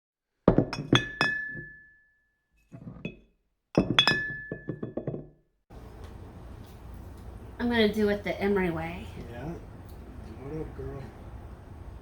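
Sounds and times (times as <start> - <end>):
glassy clinks with ringing: 0.8 - 2.0, 3.8 - 5.2.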